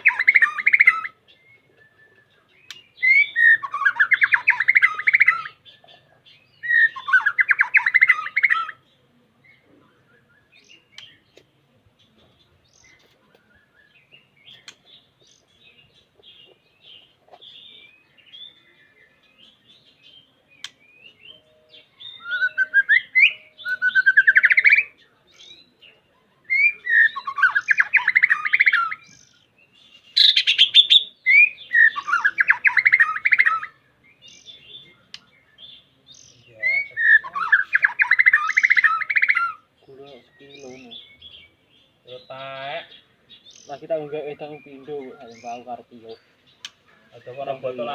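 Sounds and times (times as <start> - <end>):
bird fast trilling song: 0.0 - 8.9, 12.0 - 47.9
bird soft chirps: 0.0 - 42.3.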